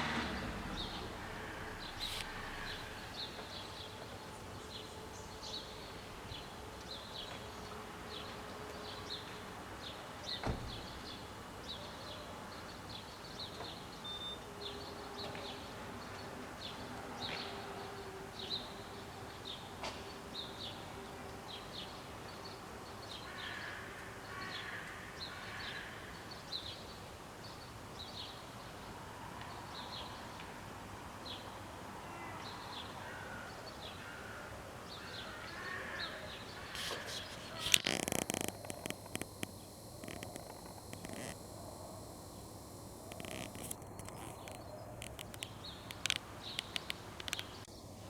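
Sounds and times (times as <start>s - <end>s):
birds chirping: 0.0s - 6.6s, 36.0s - 47.7s
outdoor background noise: 0.0s - 48.0s.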